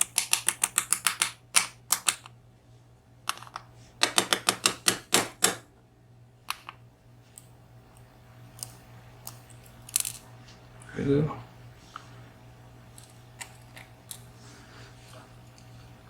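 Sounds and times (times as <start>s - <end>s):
small tools clicking on metal: 0.0s - 2.3s
faint steady hum: 0.0s - 16.0s.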